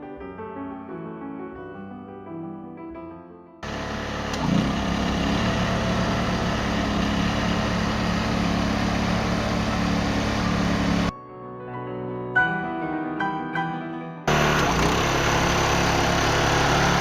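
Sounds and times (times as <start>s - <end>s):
small engine running: 3.6s - 11.1s, 14.3s - 17.0s.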